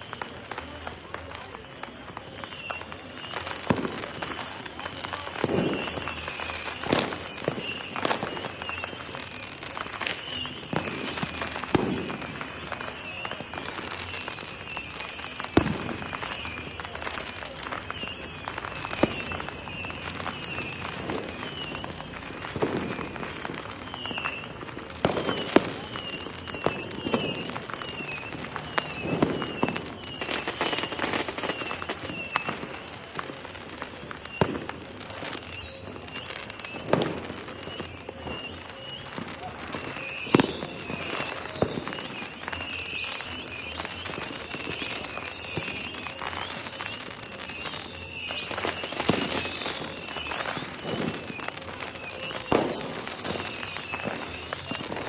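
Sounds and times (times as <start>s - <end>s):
fireworks cracking and booming: 0.0s - 55.0s.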